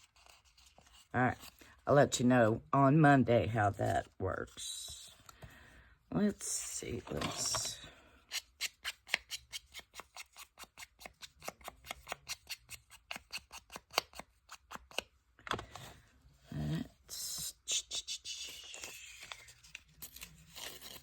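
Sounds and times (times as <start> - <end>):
rustling handling noises: 0.0 - 1.8, 6.6 - 8.0
scissors cutting paper: 8.3 - 15.1, 19.2 - 21.0.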